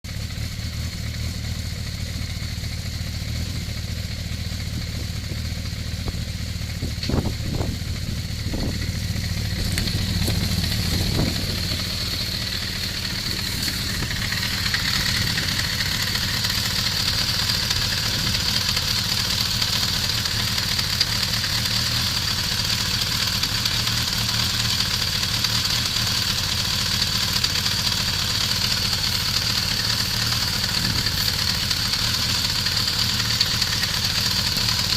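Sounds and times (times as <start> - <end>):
motorcycle engine idling with knock: 0.1 - 34.9.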